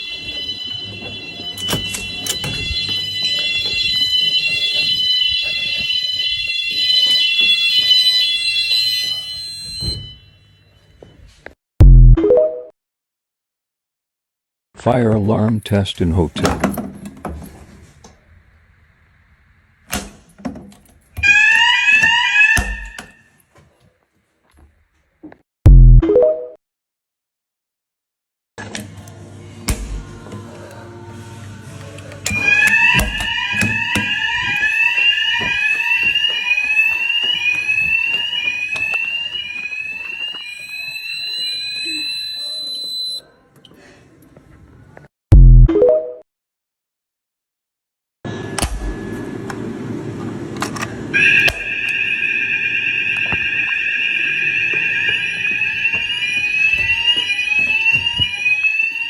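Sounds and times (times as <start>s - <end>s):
fire alarm rising sweep tone: 0.0s - 11.2s, 32.3s - 43.3s, 51.2s - 59.0s.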